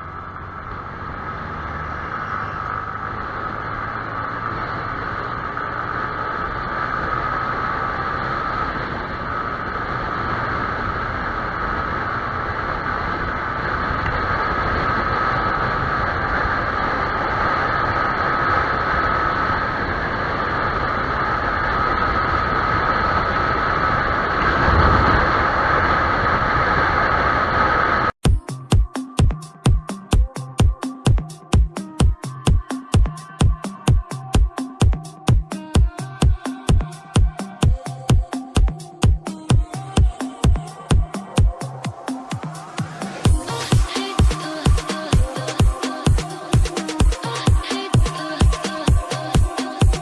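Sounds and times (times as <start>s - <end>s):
motorcycle engine whine: 0.0s - 28.1s
wind and road noise: 0.0s - 28.2s, 31.2s - 50.0s.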